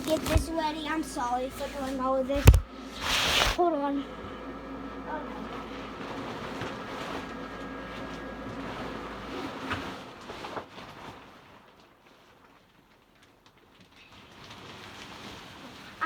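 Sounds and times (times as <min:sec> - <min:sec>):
electric blower fan humming: 0:00.0 - 0:11.9.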